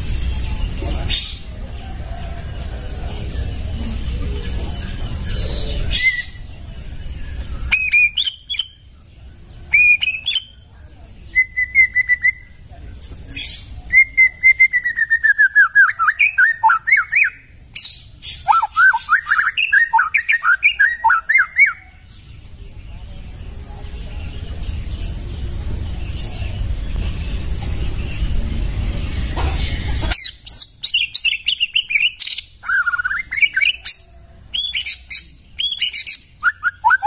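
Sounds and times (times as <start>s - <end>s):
bird singing whistled phrases: 5.2s - 6.5s, 7.2s - 8.8s, 9.7s - 10.6s, 11.2s - 12.6s, 13.3s - 22.1s, 30.2s - 37.0s.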